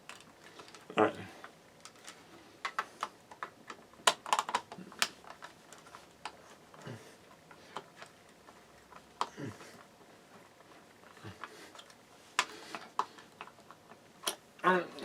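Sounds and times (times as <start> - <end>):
small clicks of hard parts handled: 0.0 - 6.8.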